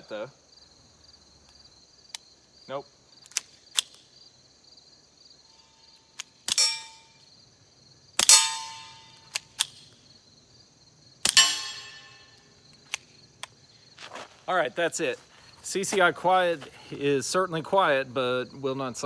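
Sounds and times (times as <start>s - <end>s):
insects chirping: 0.0s - 19.0s
small clicks: 3.2s - 4.0s
steel target ringing: 6.5s - 7.2s, 8.2s - 9.2s, 11.3s - 12.5s
suppressed pistol shots: 8.2s - 9.8s, 11.2s - 12.1s.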